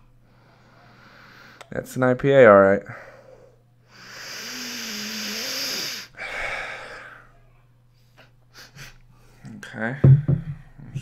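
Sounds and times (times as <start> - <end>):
man breathing: 0.0 - 1.7, 2.8 - 7.4.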